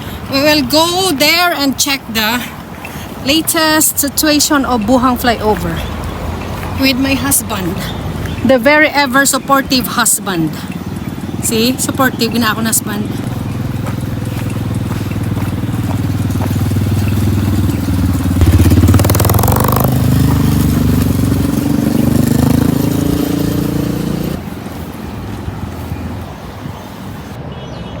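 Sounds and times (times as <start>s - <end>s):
motorcycle engine running: 9.3s - 24.9s.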